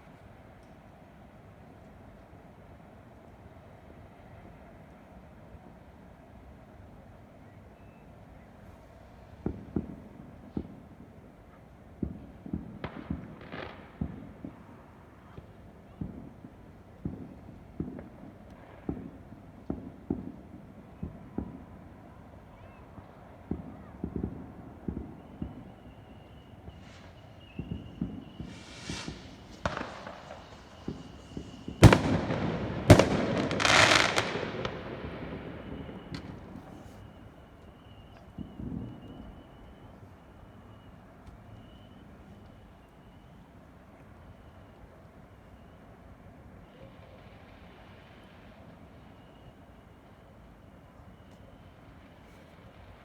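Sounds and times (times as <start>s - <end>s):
fireworks bangs and pops: 12.0s - 21.6s, 26.6s - 37.1s
fireworks crackling: 23.5s - 39.1s
firework hiss: 26.7s - 34.7s.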